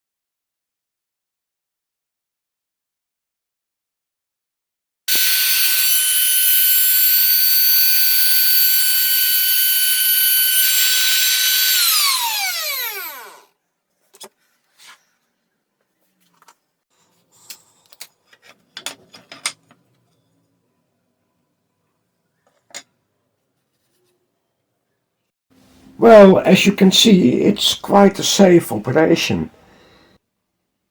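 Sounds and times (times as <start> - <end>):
router motor whining: 5.1 - 13.5.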